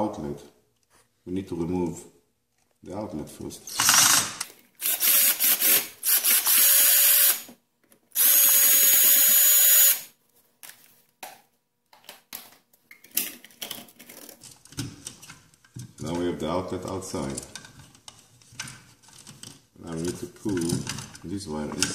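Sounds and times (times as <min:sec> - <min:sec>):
cordless drill whining: 0:04.8 - 0:10.1.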